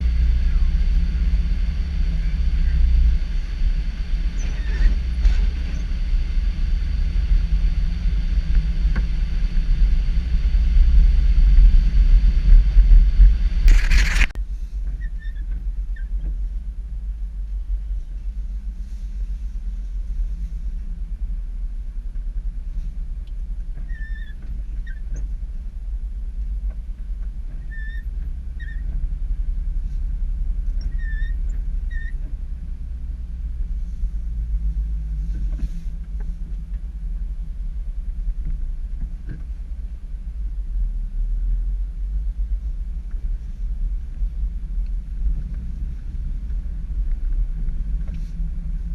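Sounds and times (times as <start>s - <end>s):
rushing noise: 0.0s - 14.6s
engine and road rumble: 0.0s - 48.9s
faint short squeaks: 4.4s - 5.0s, 14.9s - 16.2s, 23.8s - 25.3s, 27.6s - 28.9s, 30.8s - 32.2s.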